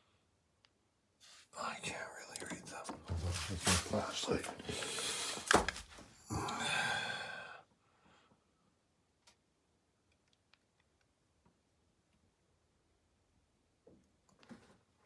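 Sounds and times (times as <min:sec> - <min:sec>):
person exhaling breathily: 0:06.3 - 0:07.6.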